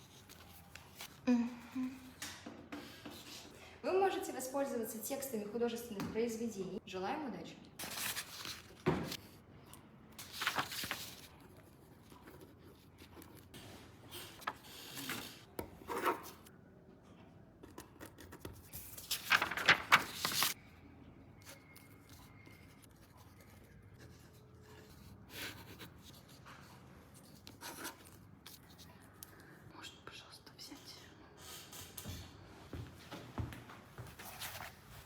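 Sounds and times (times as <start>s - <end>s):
paper rustling and scratching: 0.0s - 1.2s, 7.8s - 9.2s, 10.2s - 16.5s, 18.0s - 20.6s, 34.2s - 35.0s.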